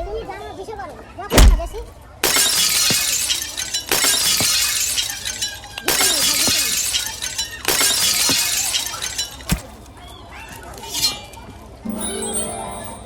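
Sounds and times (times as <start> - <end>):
glass shattering: 0.0 - 0.2, 1.3 - 9.9
tinkling glass shards: 1.4 - 9.8, 11.9 - 13.0.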